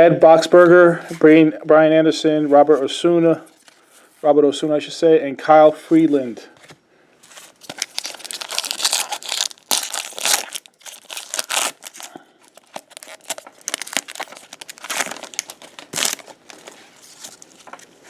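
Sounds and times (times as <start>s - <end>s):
wrappers crinkling and tearing: 7.3s - 17.9s.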